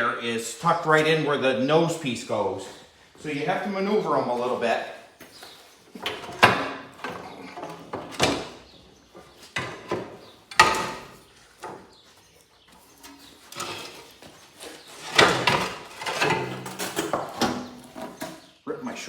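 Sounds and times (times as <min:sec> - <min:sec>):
metal clunks and scraping: 0:05.4 - 0:12.0, 0:12.8 - 0:18.5
sharp metal knocks: 0:09.6 - 0:11.2.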